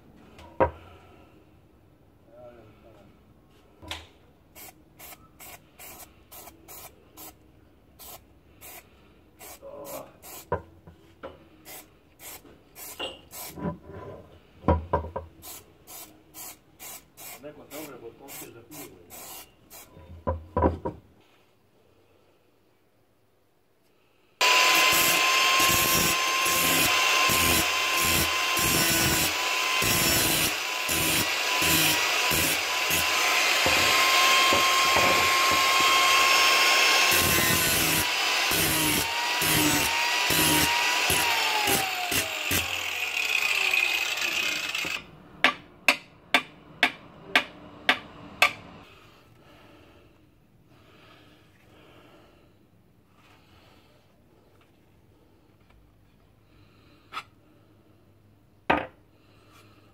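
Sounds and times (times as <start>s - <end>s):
grinder motor winding down: 24.4s - 45.0s
electric grinder grinding metal: 24.4s - 45.1s.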